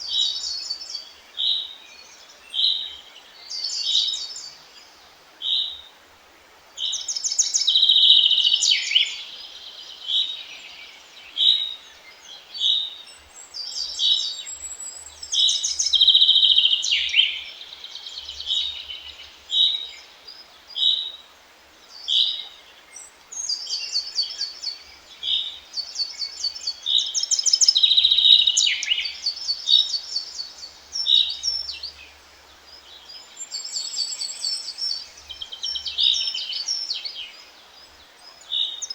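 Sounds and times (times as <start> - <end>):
faint background hiss: 0.0 - 38.9
songbirds singing: 0.0 - 38.9.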